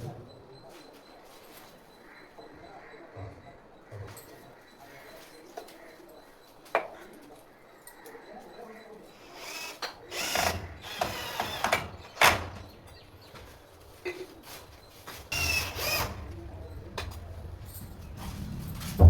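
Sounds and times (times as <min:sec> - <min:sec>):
power drill humming: 0:09.2 - 0:12.7, 0:15.3 - 0:16.5.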